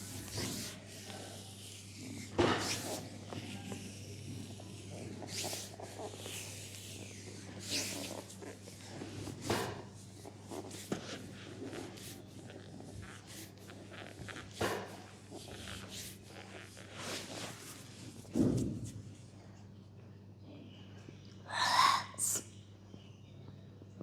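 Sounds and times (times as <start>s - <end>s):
hands rubbing skin: 0.0s - 18.2s.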